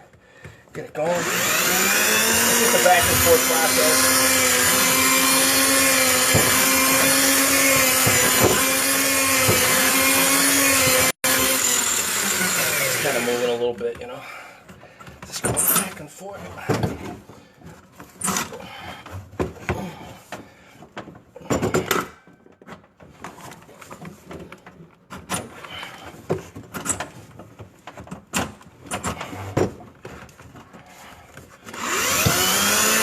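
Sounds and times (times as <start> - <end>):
electric motor whining: 1.1 - 13.5, 31.8 - 33.0
knocks and rattles of drain cable: 19.1 - 30.8.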